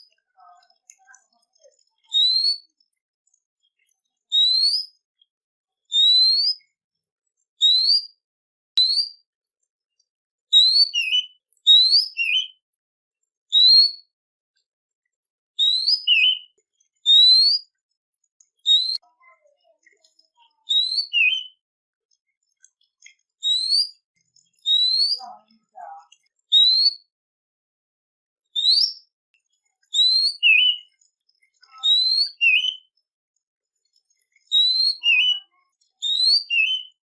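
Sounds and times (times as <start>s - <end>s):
songbird whistled notes: 2.0s - 2.8s, 4.3s - 5.0s, 5.9s - 6.6s, 7.6s - 8.2s, 8.8s - 9.2s, 10.6s - 12.6s, 13.5s - 14.1s, 15.6s - 17.7s, 18.6s - 19.0s, 20.7s - 21.6s, 23.4s - 24.0s, 24.6s - 25.3s, 26.5s - 27.1s, 28.6s - 29.1s, 30.0s - 30.9s, 31.8s - 32.9s, 34.5s - 37.0s.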